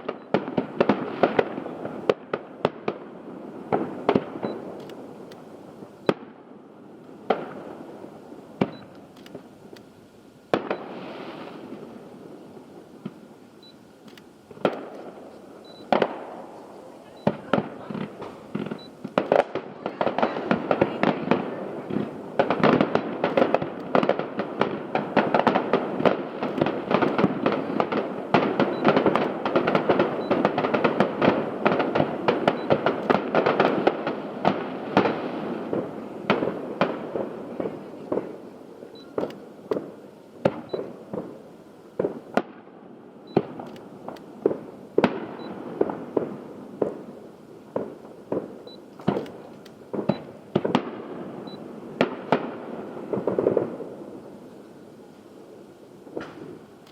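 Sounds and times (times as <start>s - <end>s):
fireworks booming and crackling: 0.0s - 56.9s
firework whistles: 10.5s - 13.9s, 31.7s - 33.9s.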